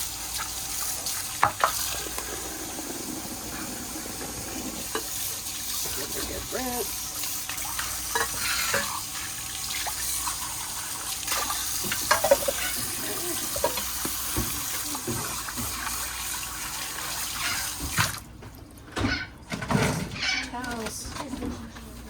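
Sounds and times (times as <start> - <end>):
tap water running into sink: 0.0 - 19.1
bowls knocking: 11.9 - 15.2.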